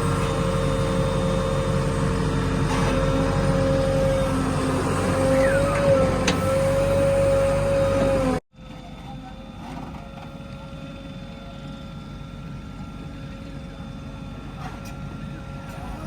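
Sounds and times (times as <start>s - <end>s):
heavy machinery diesel engine running: 0.0s - 8.4s.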